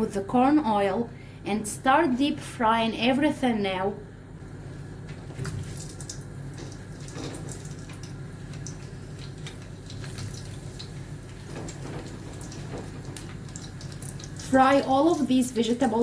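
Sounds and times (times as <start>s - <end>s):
vegetables deep frying sizzling: 5.4s - 16.0s.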